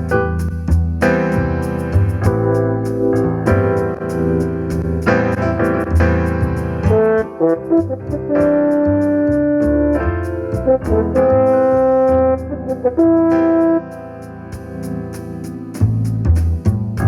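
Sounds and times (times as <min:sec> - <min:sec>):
electronic backing track with beat: 0:00.0 - 0:17.0
brass-like held notes: 0:06.9 - 0:09.2, 0:10.6 - 0:13.9.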